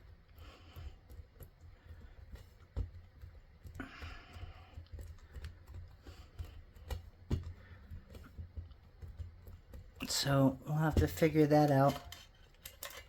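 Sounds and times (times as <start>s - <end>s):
hands thumping clay on desk: 2.2s - 10.1s.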